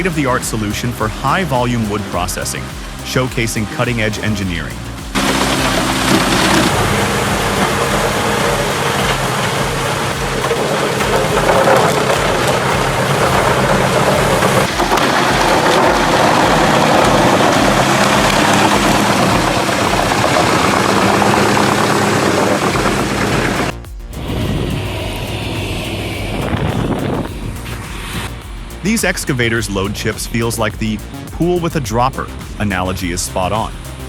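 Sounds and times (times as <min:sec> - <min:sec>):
wood being chipped: 0:00.0 - 0:23.8
wood chipper engine droning: 0:00.8 - 0:27.3.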